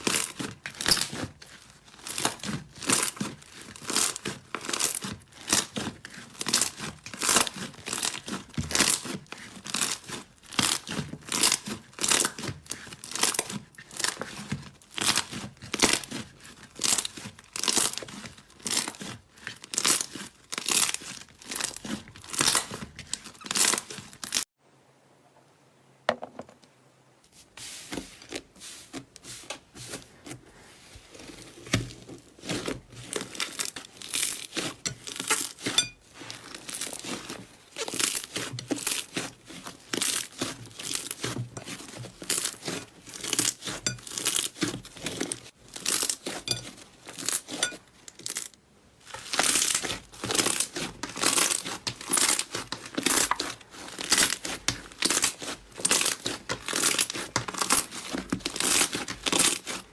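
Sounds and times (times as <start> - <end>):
slime crackling and popping: 0.0 - 24.4, 32.4 - 59.9.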